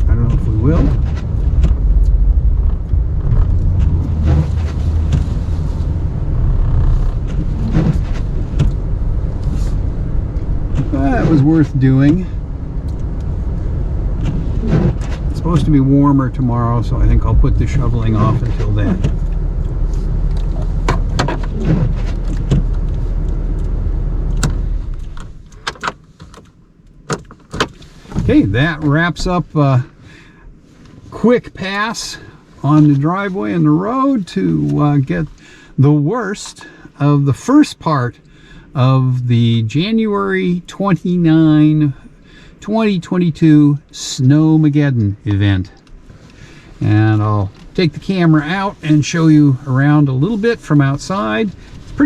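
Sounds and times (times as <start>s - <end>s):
truck engine low rumble: 0.0s - 25.7s, 26.5s - 52.0s
sharp clicks and knocks: 0.2s - 5.4s, 18.4s - 28.3s.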